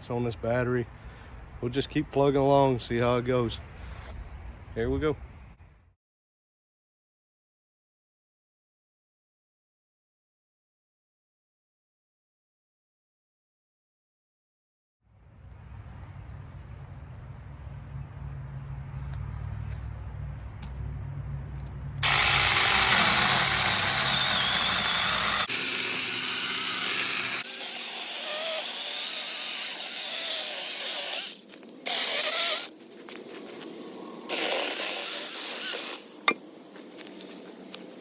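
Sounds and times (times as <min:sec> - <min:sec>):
mini chainsaw cutting branches: 0:22.0 - 0:32.8, 0:34.3 - 0:36.4.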